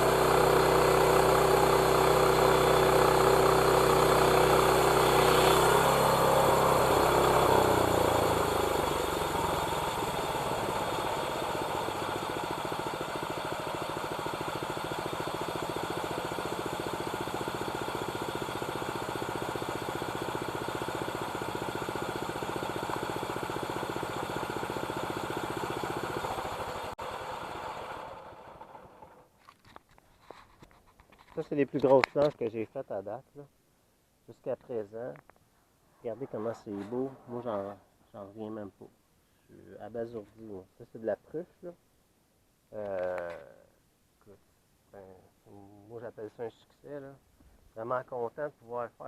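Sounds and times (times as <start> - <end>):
sawmill engine idling: 0.0 - 29.3.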